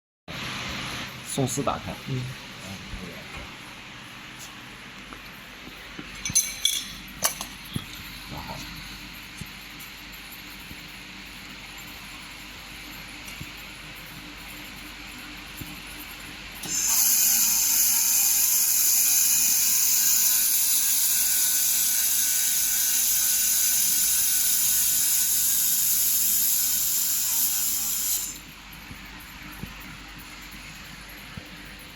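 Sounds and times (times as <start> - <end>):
laser welder hissing: 16.6 - 28.4.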